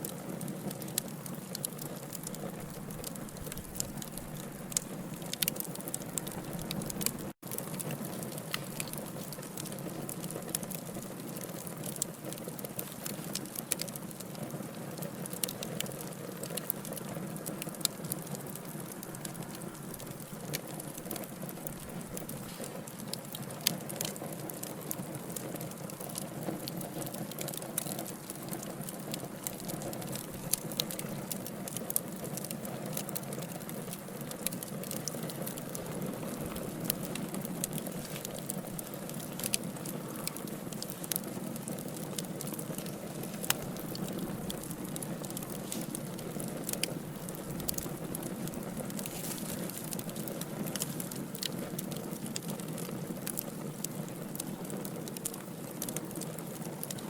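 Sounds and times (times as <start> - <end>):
fire crackling and popping: 0.0 - 57.0
low rush of flame: 33.9 - 54.4.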